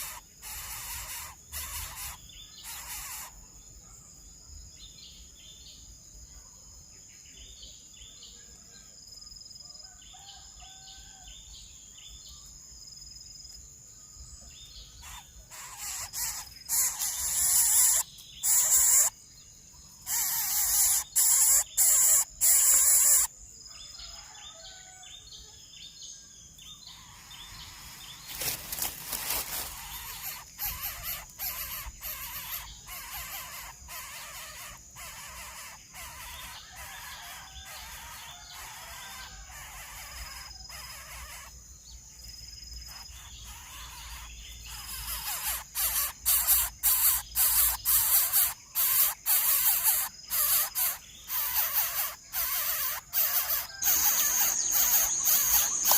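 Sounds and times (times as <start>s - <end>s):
birds calling: 0.0s - 3.6s, 14.6s - 24.8s, 26.6s - 42.0s, 42.6s - 55.9s.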